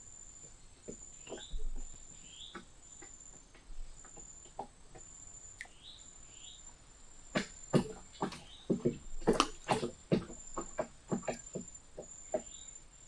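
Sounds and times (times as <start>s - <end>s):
light knocks and taps: 7.3s - 12.5s.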